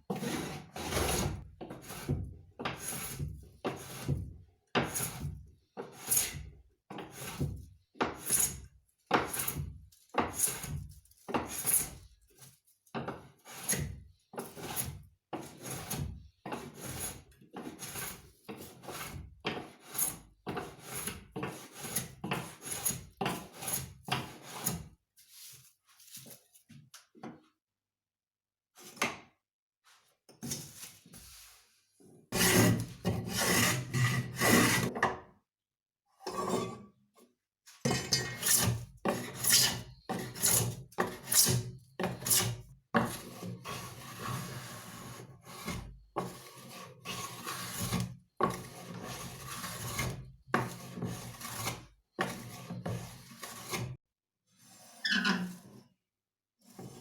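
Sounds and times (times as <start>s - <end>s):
hand scraping wood: 32.4s - 34.9s.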